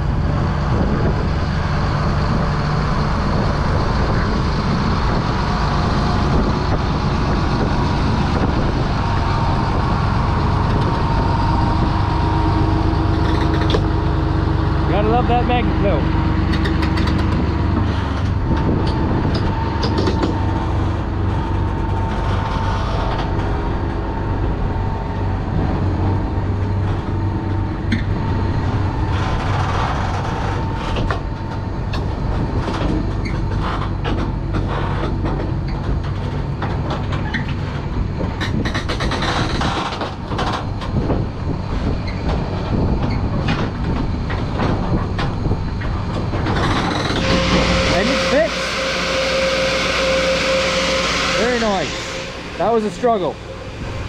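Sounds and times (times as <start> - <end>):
loud machine drone: 0.0 - 54.0
rattling and clattering: 27.8 - 47.3.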